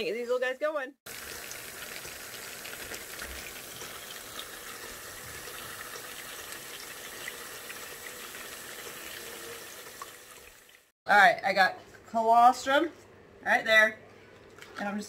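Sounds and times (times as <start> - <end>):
tap water running into sink: 1.1 - 10.9.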